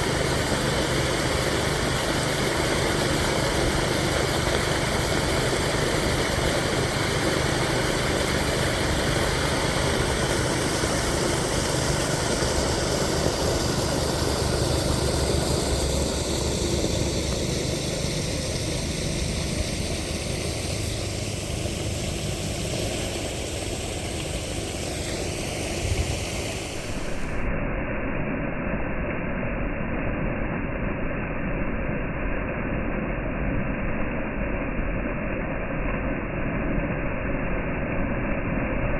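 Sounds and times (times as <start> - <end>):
distant freeway traffic rumble: 0.0 - 27.5
water pouring into creek: 0.0 - 27.5.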